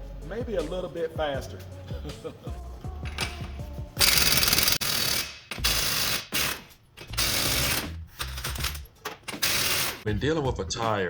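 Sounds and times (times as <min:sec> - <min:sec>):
impact wrench hammering: 0:03.0 - 0:10.0.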